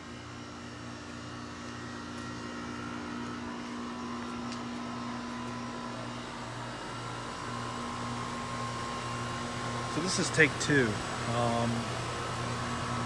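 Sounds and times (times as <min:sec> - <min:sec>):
fan noise: 0:00.0 - 0:13.0
heat pump compressor hum: 0:00.0 - 0:13.0.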